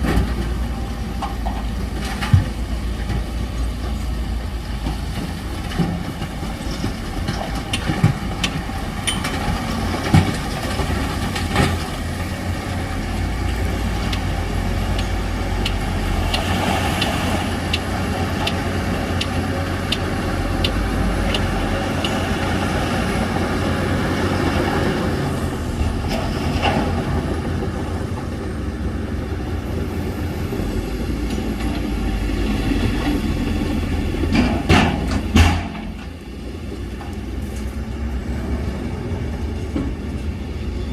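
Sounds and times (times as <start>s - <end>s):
diesel machine engine running: 0.0s - 40.9s
metallic clanks and knocks: 34.2s - 36.1s.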